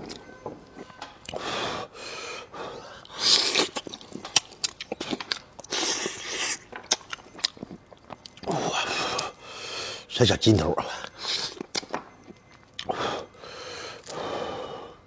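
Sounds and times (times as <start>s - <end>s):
wet chewing: 2.8s - 9.4s, 11.0s - 13.0s.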